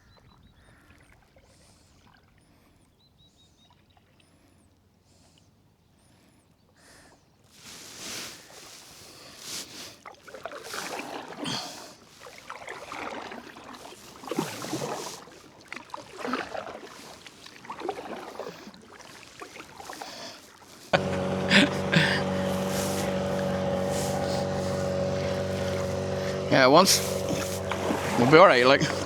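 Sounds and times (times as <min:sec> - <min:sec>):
paddle splashing in water: 0:07.9 - 0:29.0
loud drone of held tones: 0:21.0 - 0:29.0.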